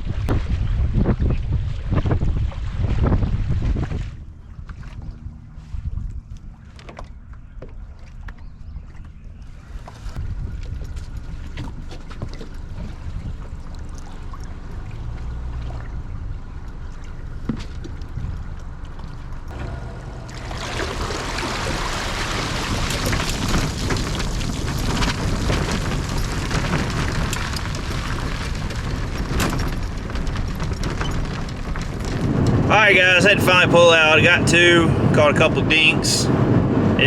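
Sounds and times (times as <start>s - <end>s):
low motor hum: 0.0s - 37.0s
loud even rushing noise: 19.5s - 24.5s, 32.0s - 37.0s.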